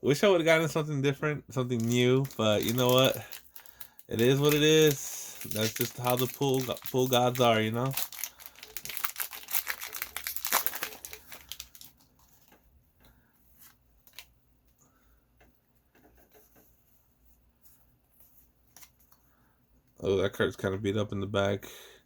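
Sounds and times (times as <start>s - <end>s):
foil wrapper crinkling and tearing: 1.7s - 12.5s
soft clicks of cards handled: 18.2s - 19.3s.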